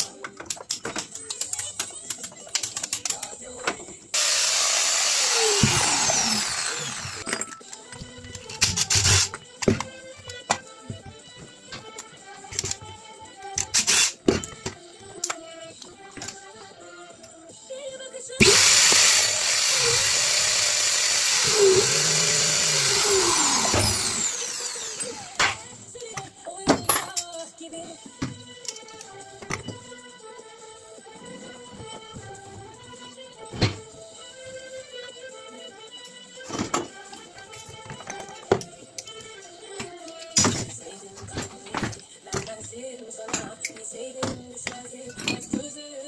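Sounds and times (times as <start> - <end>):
tool parts clicking: 0.2 - 10.7, 11.8 - 12.8, 13.6 - 16.4, 18.4 - 25.6
angle grinder whining: 4.1 - 7.3, 18.4 - 25.7.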